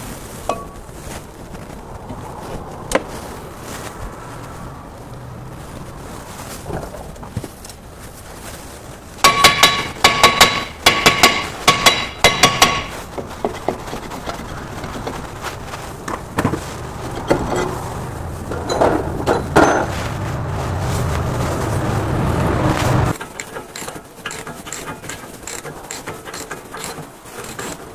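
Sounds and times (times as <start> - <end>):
hammer striking metal: 9.2 - 13.1
tools knocking: 9.2 - 15.2
low steady hum: 9.2 - 23.2.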